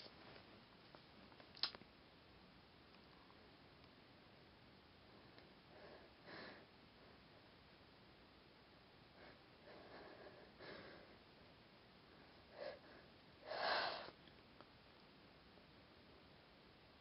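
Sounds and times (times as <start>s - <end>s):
person sniffing: 13.4s - 14.2s.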